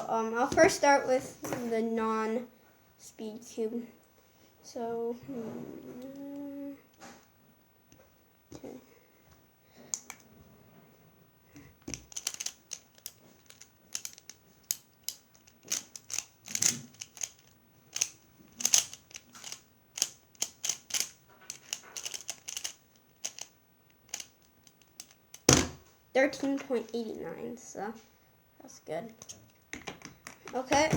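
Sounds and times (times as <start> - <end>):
plastic puzzle clicking and clacking: 11.8 - 25.6.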